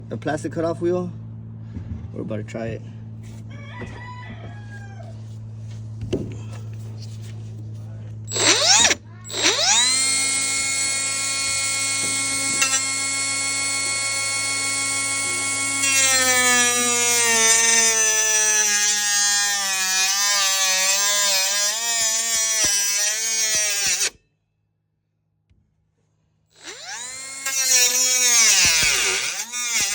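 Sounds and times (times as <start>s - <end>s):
steady low hum: 0.0s - 3.6s
cutoff tool whining: 8.2s - 24.2s, 26.5s - 29.9s.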